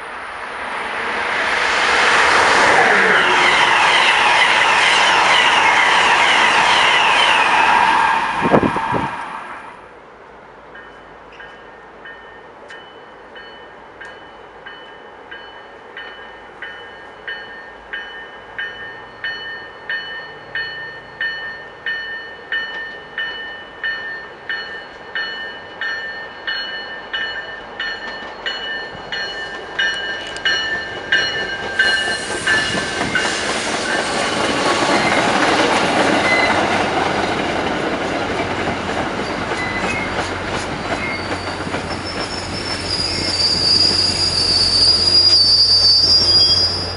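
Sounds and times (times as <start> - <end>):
train passing: 0.0 - 46.9
locomotive bell ringing: 2.9 - 3.8, 10.8 - 34.2.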